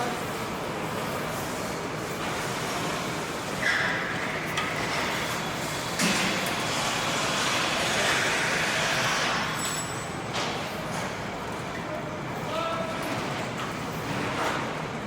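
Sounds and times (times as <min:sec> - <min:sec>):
machinery noise: 0:02.2 - 0:12.3.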